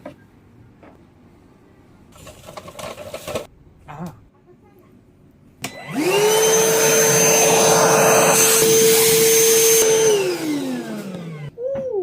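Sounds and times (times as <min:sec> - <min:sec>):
wet dry vacuum running: 0:05.7 - 0:11.5
vacuum motor spinning down: 0:05.7 - 0:11.6.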